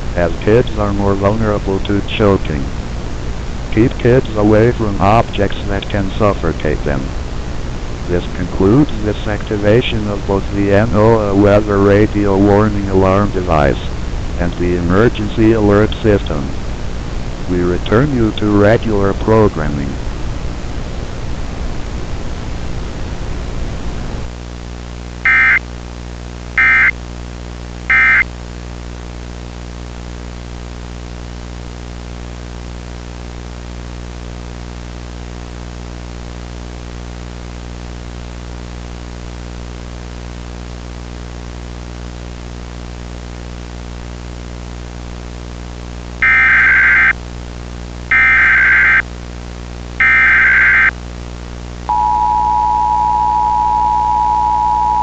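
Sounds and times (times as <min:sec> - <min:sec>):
steady hiss with low hum: 0:00.0 - 0:55.0
digital data bursts: 0:25.3 - 0:25.6, 0:26.6 - 0:26.9, 0:27.9 - 0:28.2, 0:46.2 - 0:47.1, 0:48.1 - 0:49.0, 0:50.0 - 0:50.9
two-tone attention signal: 0:25.3 - 0:25.6, 0:26.6 - 0:26.9, 0:27.9 - 0:28.2, 0:46.2 - 0:47.1, 0:48.1 - 0:49.0, 0:50.0 - 0:50.9, 0:51.9 - 0:55.0.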